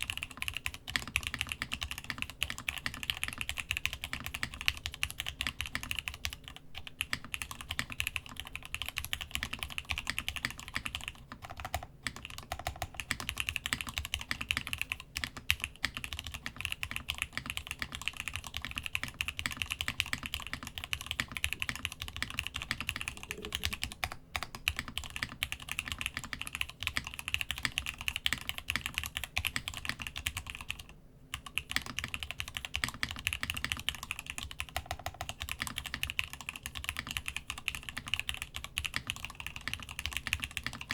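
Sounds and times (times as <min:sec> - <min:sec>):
mechanical keyboard typing: 0:00.0 - 0:40.9.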